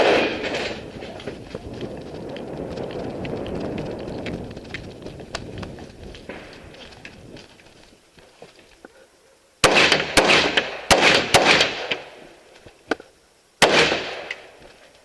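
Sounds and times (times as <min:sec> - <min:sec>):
rifle shots with echo: 0:00.0 - 0:00.9, 0:09.6 - 0:12.2, 0:13.6 - 0:14.5.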